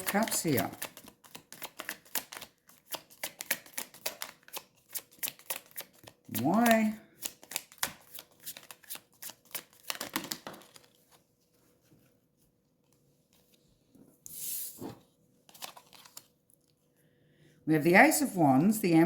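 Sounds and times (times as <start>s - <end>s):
cards shuffling clicks: 0.0s - 10.9s, 15.5s - 16.3s.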